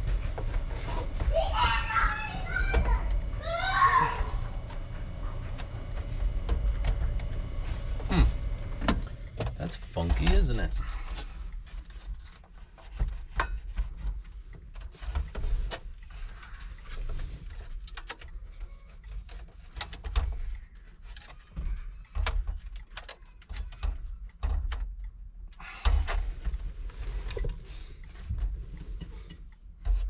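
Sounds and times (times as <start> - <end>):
low bumps and thumps: 0.0 - 10.8
clicks and knocks of handled parts: 8.4 - 30.0.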